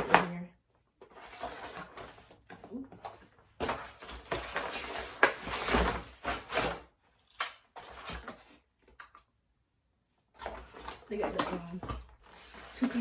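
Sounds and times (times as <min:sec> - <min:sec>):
packaging rustling: 0:01.0 - 0:09.2.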